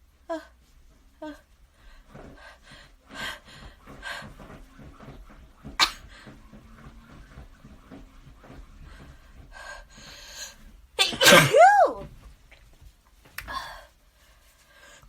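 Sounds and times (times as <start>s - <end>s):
noisy breath: 1.6s - 7.2s, 8.4s - 10.8s, 13.4s - 15.0s
person sneezing: 11.0s - 12.0s.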